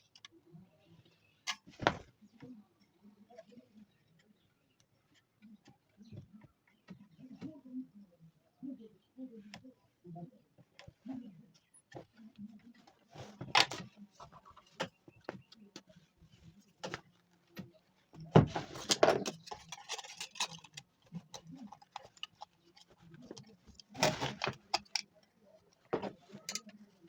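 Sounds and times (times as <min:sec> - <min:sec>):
small hard objects clattering: 0:18.3 - 0:25.0.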